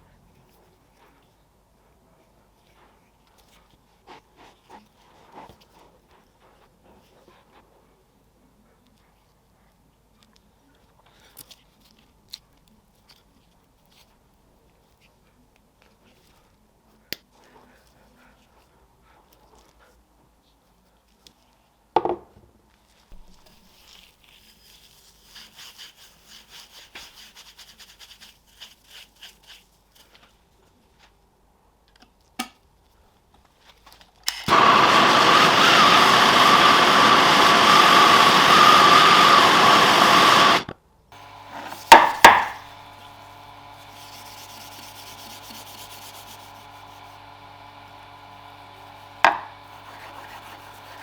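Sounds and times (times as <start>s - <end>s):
power tool cutting metal: 34.3s - 51.0s
steady motor hum: 34.5s - 40.6s, 41.2s - 51.0s.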